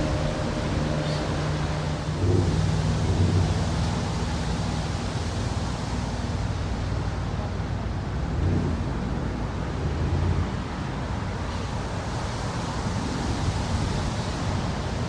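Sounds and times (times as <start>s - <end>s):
boat engines rumbling: 0.0s - 15.0s
wind noise on microphone: 0.0s - 15.0s.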